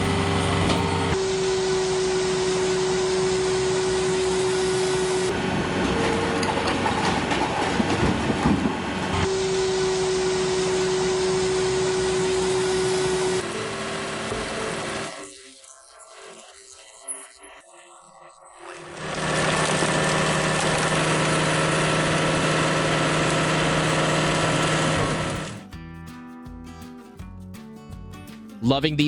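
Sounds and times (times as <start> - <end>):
firewood processor running: 0.0 - 25.6.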